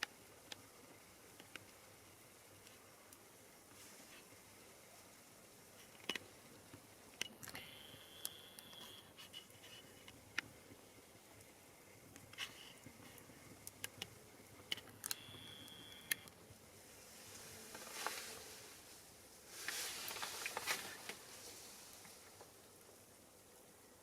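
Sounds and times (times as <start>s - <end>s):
fire crackling and popping: 9.4s - 16.4s.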